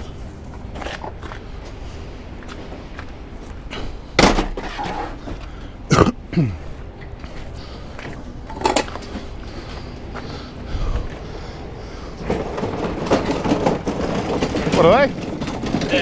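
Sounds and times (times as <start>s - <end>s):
heavy equipment knocks and clunks: 3.9s - 5.0s, 12.2s - 16.0s.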